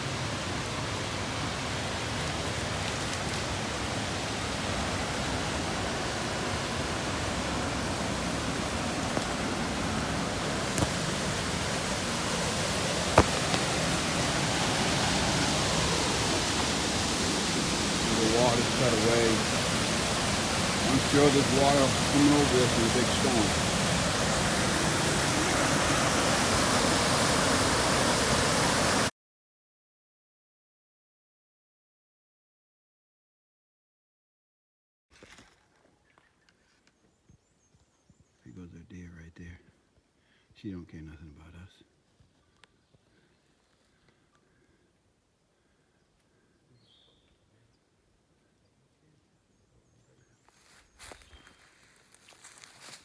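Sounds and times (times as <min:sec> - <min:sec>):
water pouring over rocks: 0:00.0 - 0:29.1.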